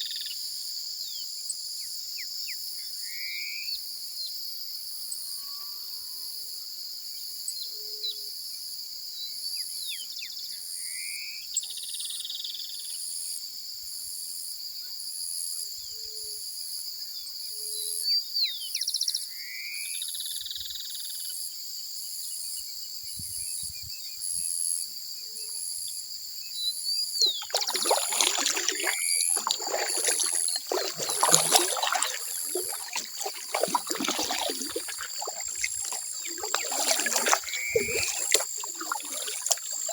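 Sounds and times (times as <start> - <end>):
kayak paddles splashing water: 27.2 - 39.9.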